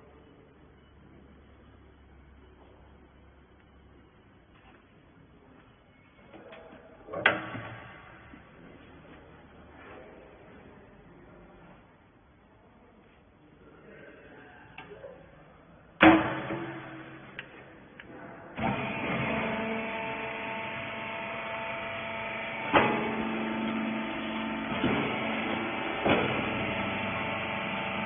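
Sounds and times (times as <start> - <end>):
sudden loud bang: 16.0 - 17.4
baler motor humming: 18.6 - 28.0.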